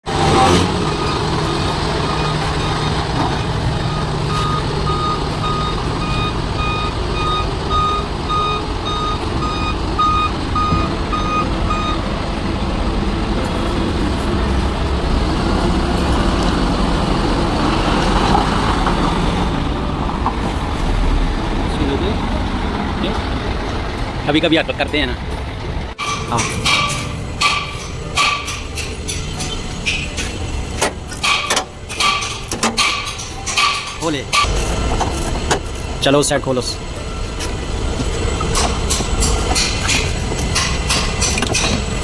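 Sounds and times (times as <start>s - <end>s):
truck engine running: 0.0s - 42.0s
reversing alarm beeping: 0.1s - 12.2s.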